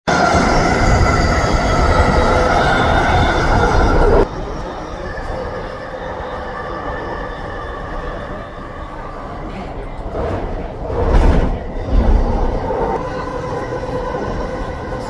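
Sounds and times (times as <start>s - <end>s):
train rail and wheel noise: 0.1s - 15.0s
train whine: 0.1s - 15.0s.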